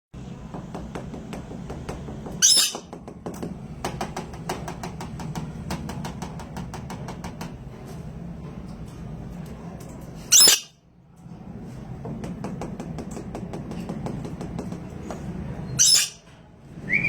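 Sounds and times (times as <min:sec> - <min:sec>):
parrot screeching: 0:02.4 - 0:02.9, 0:10.3 - 0:10.8, 0:15.8 - 0:16.2.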